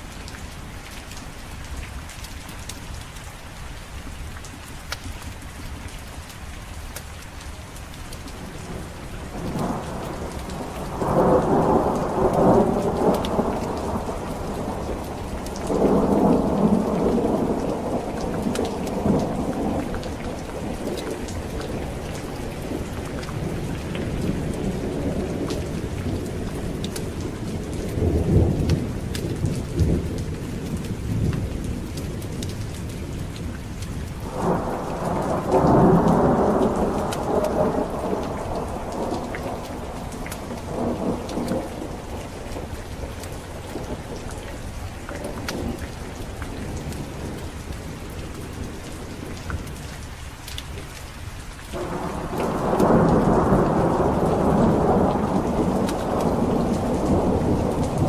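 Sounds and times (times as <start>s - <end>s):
steady rain: 0.0s - 58.0s
rolling thunder: 8.7s - 32.3s, 34.2s - 46.0s, 51.8s - 58.0s.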